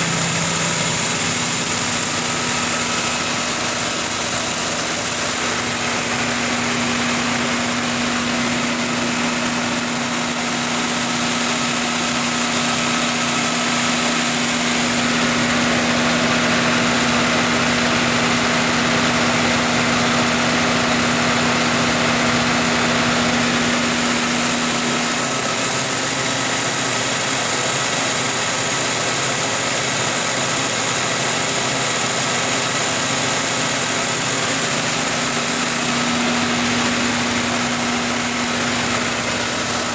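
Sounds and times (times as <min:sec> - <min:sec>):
high-pitched whine: 0:00.0 - 0:18.0, 0:34.4 - 0:39.9
diesel generator engine running: 0:00.0 - 0:39.9.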